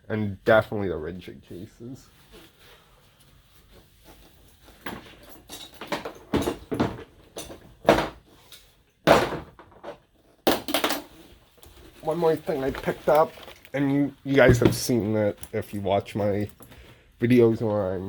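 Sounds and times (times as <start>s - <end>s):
tools clunking and knocking: 4.8s - 8.2s, 14.4s - 15.1s.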